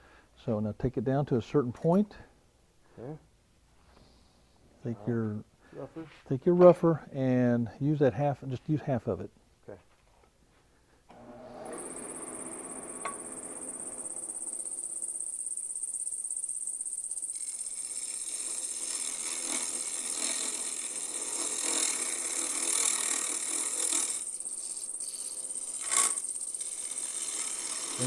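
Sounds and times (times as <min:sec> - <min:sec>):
lathe tool scraping wood: 0:11.1 - 0:15.5, 0:16.8 - 0:28.0
wood lathe whining: 0:11.1 - 0:28.0.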